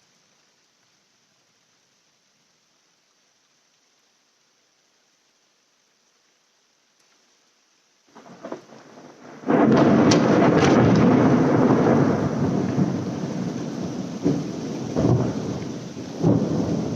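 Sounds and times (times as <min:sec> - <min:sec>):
heavy rain: 0:00.0 - 0:16.9
thunder rumbling: 0:08.1 - 0:16.9.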